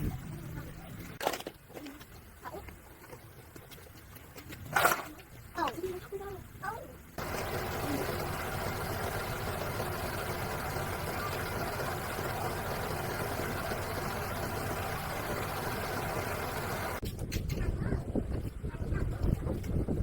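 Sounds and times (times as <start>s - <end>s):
motorbike engine idling: 7.2s - 17.0s.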